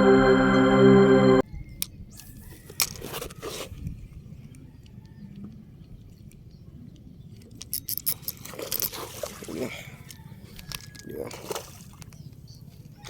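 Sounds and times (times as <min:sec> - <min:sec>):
ambient music: 0:00.0 - 0:01.4.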